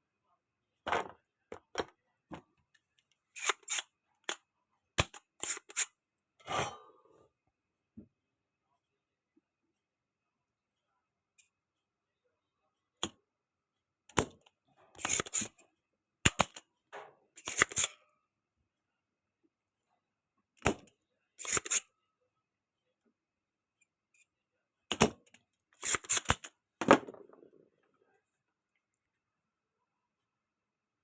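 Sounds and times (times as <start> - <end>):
hand tools clicking and snapping: 16.2 - 16.6, 17.4 - 17.9, 24.9 - 26.5.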